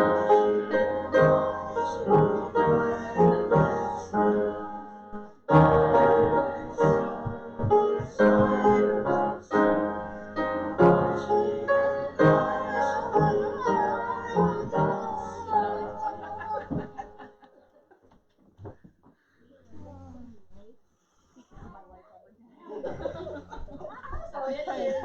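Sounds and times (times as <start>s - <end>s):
piano playing slow chords: 0.0s - 17.2s.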